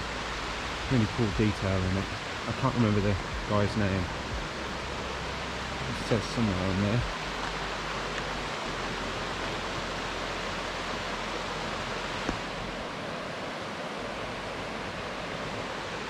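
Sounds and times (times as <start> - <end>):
flowing water rushing: 0.0 - 16.0.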